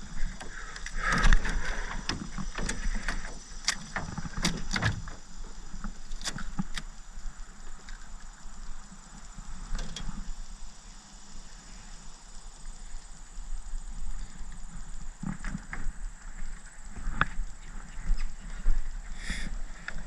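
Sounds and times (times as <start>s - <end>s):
fish and gear rattling in boat: 0.0s - 7.0s, 8.8s - 10.4s.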